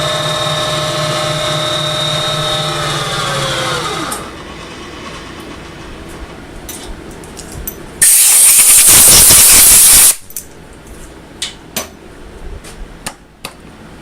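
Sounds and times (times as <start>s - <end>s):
compressed air blow gun hissing: 8.0s - 10.2s.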